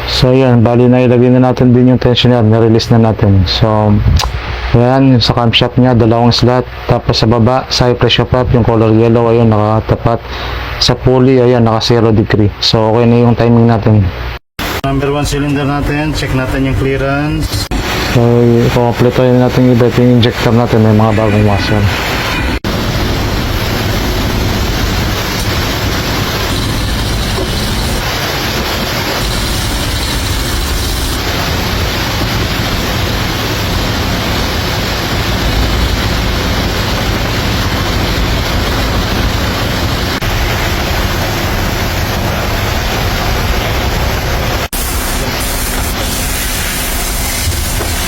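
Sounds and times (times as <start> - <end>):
loud rushing noise: 4.2 - 5.2, 17.3 - 48.0.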